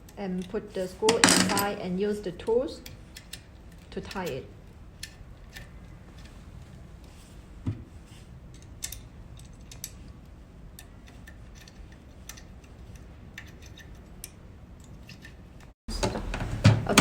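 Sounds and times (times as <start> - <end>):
metal clicks of screws tightening: 2.8 - 4.4, 8.5 - 10.1, 10.8 - 15.4.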